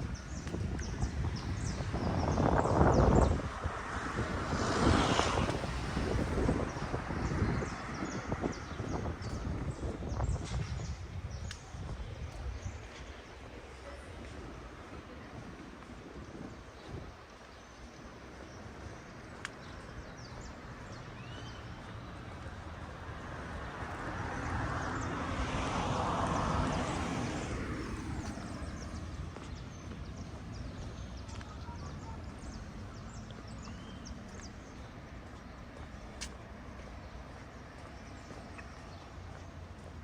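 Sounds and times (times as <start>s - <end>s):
road vehicle passing by: 0.0s - 10.9s, 20.4s - 40.0s.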